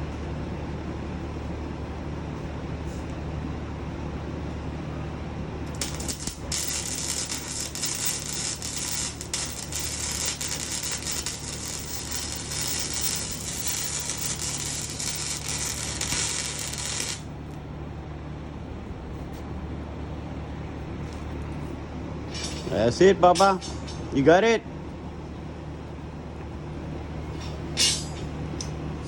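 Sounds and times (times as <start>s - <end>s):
steady low hum: 0.0s - 29.0s
welding arc crackling: 5.7s - 17.6s.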